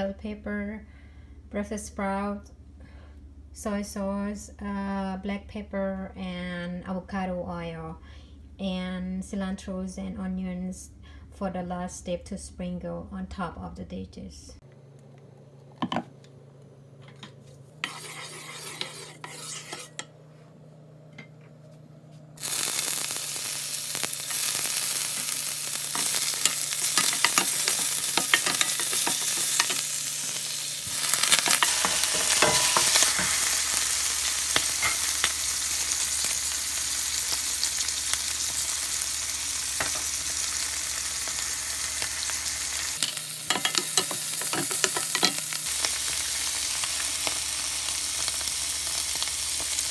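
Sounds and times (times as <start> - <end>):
vegetables sizzling in oil: 22.4 - 49.9.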